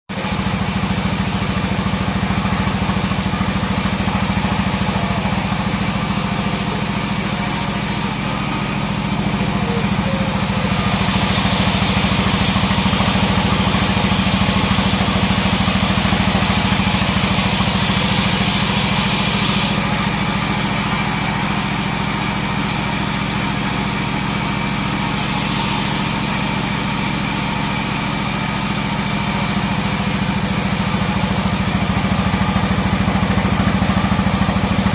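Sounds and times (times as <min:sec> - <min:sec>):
bandsaw loud drone: 0:00.3 - 0:34.9
blade cutting log hiss: 0:10.4 - 0:20.7.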